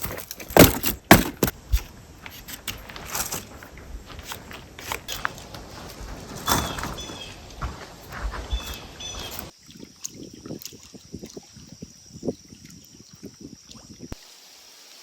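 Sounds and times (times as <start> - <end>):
dry sticks rustling and knocking: 0.0 - 9.5.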